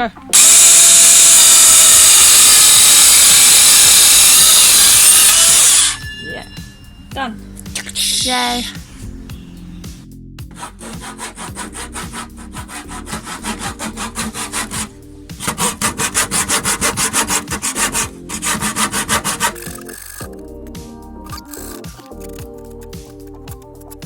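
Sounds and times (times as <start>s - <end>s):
hand saw cutting wood: 0.3s - 6.5s, 10.5s - 20.2s.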